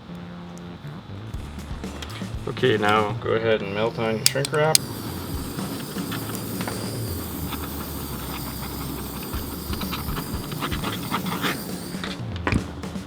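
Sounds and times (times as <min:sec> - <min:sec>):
heat tool hissing rush: 0:01.9 - 0:13.0
light handling clicks: 0:04.0 - 0:12.6.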